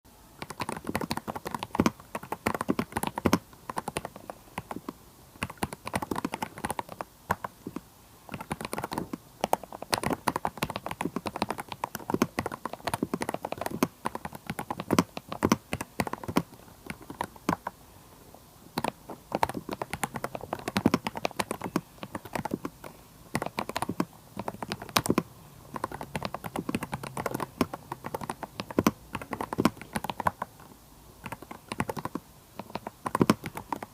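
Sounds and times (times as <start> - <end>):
mechanical keyboard typing: 0.4 - 17.8, 18.7 - 33.9.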